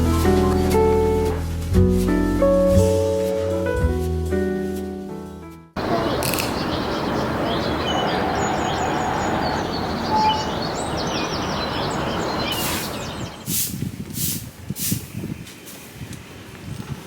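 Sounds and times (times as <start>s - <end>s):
small birds chirping and twittering: 5.8s - 13.9s, 14.8s - 16.6s
outdoor background noise: 5.8s - 17.0s.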